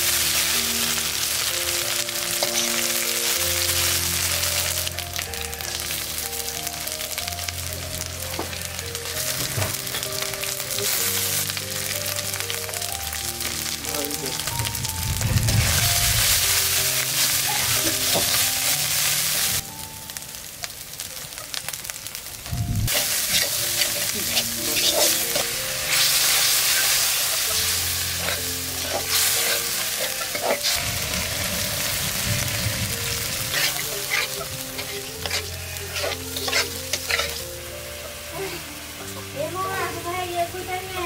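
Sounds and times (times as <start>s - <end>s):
curry sizzling in hot oil: 0.0s - 41.0s
utensil scraping a pot: 22.9s - 30.8s, 33.5s - 37.5s.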